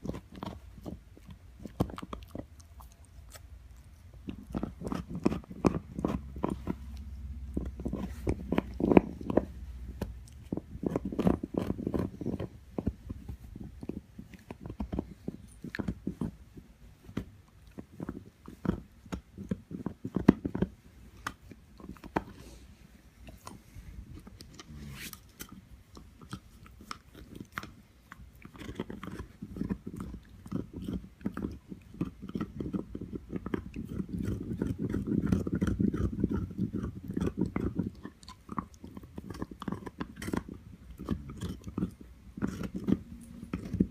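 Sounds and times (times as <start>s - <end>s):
dog gnawing on antler: 0.0s - 43.9s.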